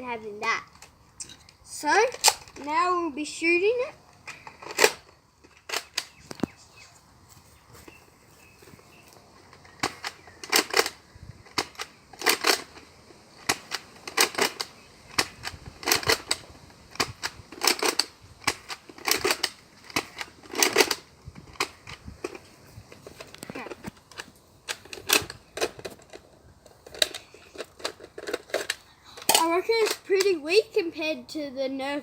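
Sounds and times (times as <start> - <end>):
plastic bolt clacking: 23.0 - 30.1.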